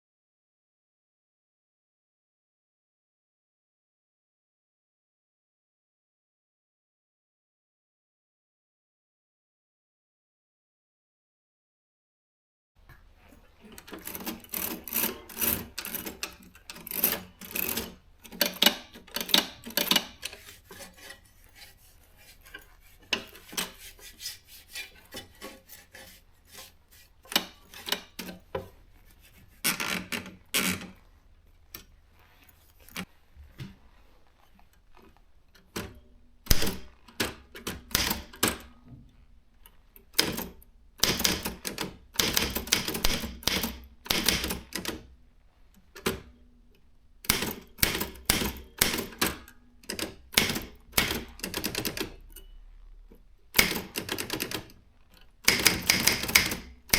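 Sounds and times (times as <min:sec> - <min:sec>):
typewriter key strikes: 0:36.5 - 0:38.6, 0:40.2 - 0:45.0, 0:47.3 - 0:52.1, 0:55.5 - 0:56.9.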